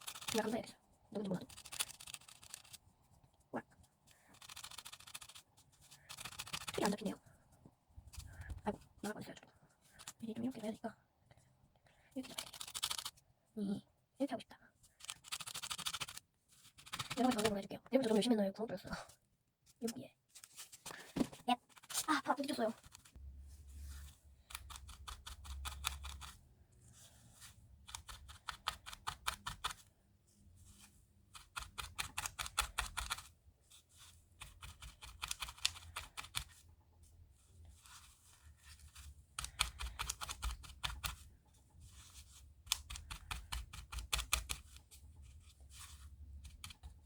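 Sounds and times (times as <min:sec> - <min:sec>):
felting needle stabbing wool: 0:00.0 - 0:02.8, 0:04.3 - 0:07.2, 0:15.0 - 0:17.6, 0:22.7 - 0:26.4, 0:27.4 - 0:29.9, 0:31.2 - 0:33.4, 0:34.3 - 0:36.6, 0:37.8 - 0:47.0.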